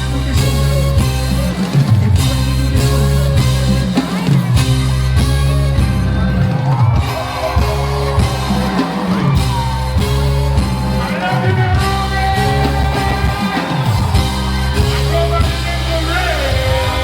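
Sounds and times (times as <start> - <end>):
loud live music with heavy bass: 0.0 - 17.0
steady drum beat: 0.0 - 17.0
person singing: 7.6 - 17.0.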